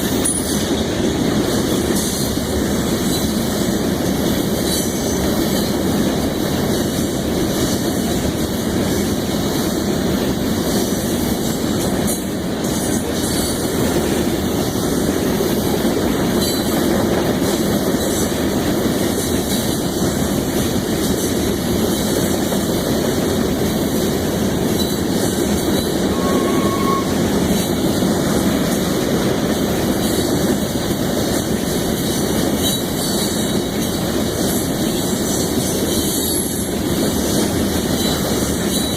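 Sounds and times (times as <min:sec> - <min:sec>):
train wheels rolling on rails: 0:00.0 - 0:38.9
wheel squeal: 0:25.7 - 0:27.7.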